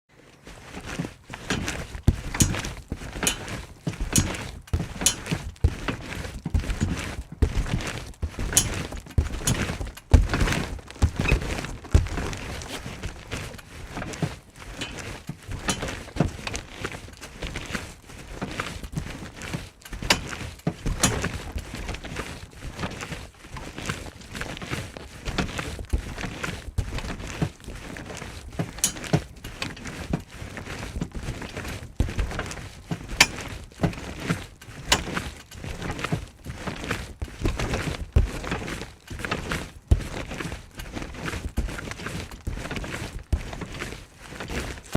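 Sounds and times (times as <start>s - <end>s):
thuds of trampoline bouncing: 0.9s - 16.6s, 20.0s - 22.1s.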